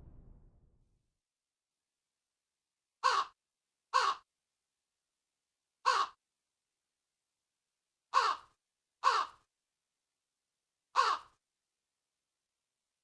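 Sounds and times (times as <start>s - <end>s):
crow cawing: 3.0s - 3.4s, 4.0s - 4.2s, 5.9s - 6.2s, 8.1s - 9.4s, 11.0s - 11.4s.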